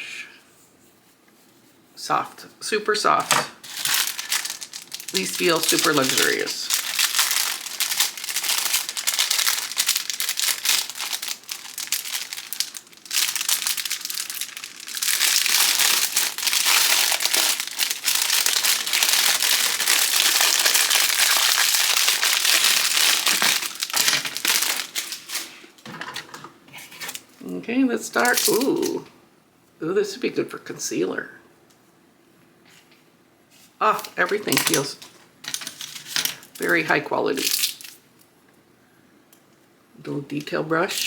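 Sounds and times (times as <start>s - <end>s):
packaging crinkling: 3.6s - 25.8s, 28.2s - 29.0s, 33.8s - 38.0s.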